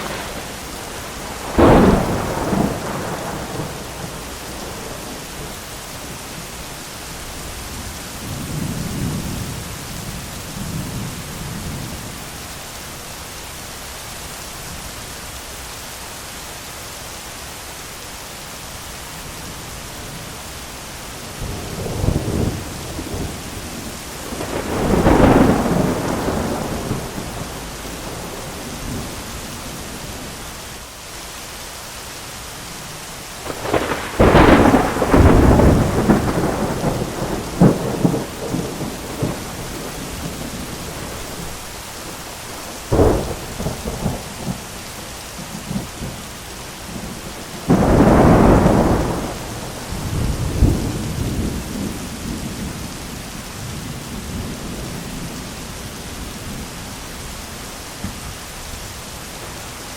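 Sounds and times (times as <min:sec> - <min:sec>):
thunder rumbling and cracking: 0:00.0 - 0:06.5, 0:21.4 - 0:30.4, 0:33.4 - 0:44.8, 0:45.4 - 0:56.8
steady rain: 0:00.0 - 0:59.9.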